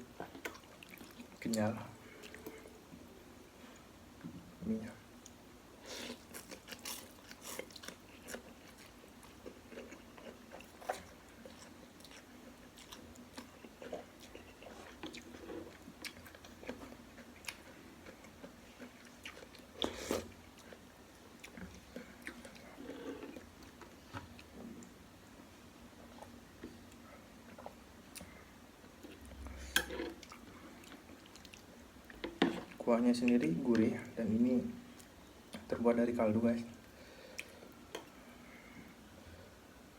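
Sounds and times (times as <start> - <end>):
person chewing: 0.2 - 1.4, 6.0 - 24.5, 29.0 - 32.7.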